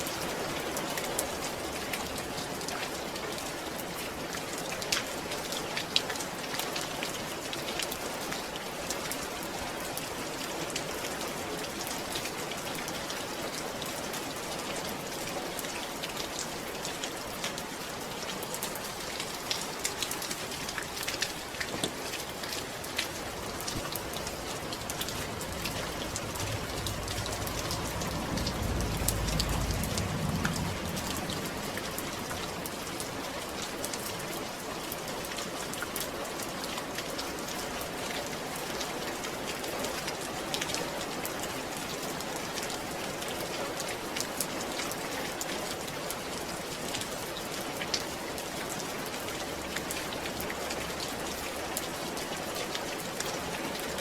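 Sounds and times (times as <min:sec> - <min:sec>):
steady rain falling: 0:00.0 - 0:54.0
low rumble: 0:22.8 - 0:33.2.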